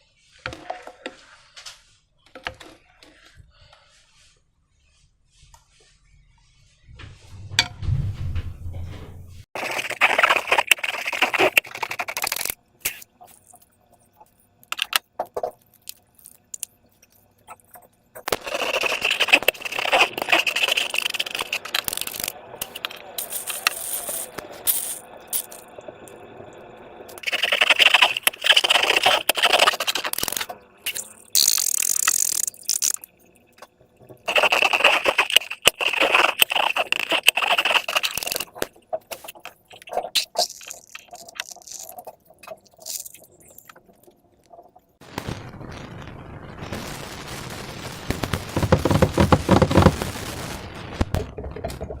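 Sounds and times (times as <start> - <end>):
slime squishing and crackling: 9.6 - 13.0, 18.2 - 24.4, 27.2 - 33.0, 34.2 - 43.8, 48.1 - 50.1.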